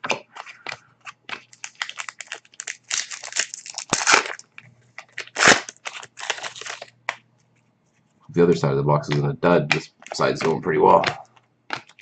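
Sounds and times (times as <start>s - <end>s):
foil wrappers crinkling: 0.0s - 7.0s.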